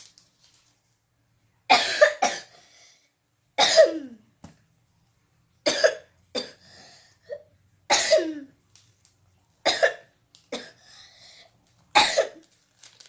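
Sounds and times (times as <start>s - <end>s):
child coughing: 1.7s - 2.5s, 3.6s - 4.2s, 5.7s - 6.6s, 7.3s - 8.5s, 9.7s - 10.8s, 12.0s - 12.4s.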